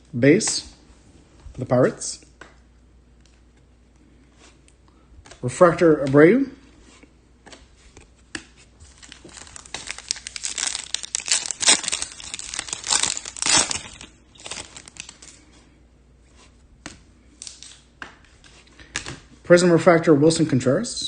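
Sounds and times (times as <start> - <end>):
foil wrapper tearing and crinkling: 8.9 - 15.4.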